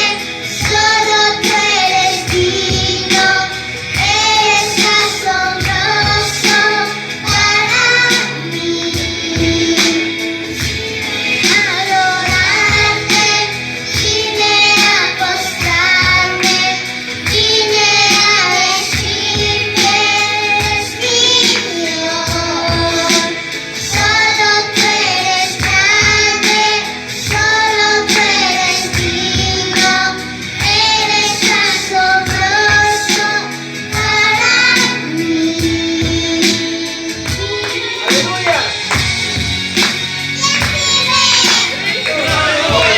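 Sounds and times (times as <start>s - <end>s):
girl singing a worship song: 0.0s - 38.3s, 39.0s - 42.9s
instrumental backing music: 0.0s - 42.9s.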